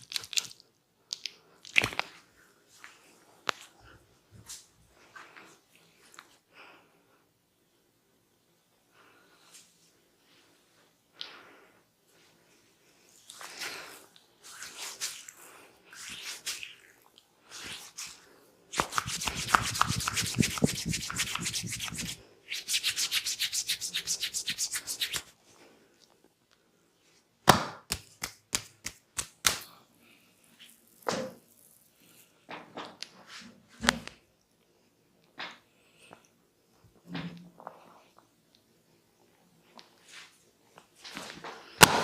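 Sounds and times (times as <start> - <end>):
hands rubbing skin: 13.2 - 25.3, 27.9 - 29.8
rapid percussive massage strokes: 18.7 - 25.3.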